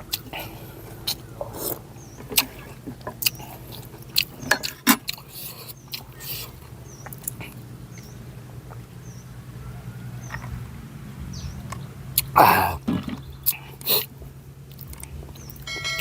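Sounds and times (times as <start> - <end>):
mouth and bowl noises: 0.0 - 10.9, 11.5 - 16.0
steady low hum: 0.0 - 16.0
short high chirps: 15.7 - 16.0.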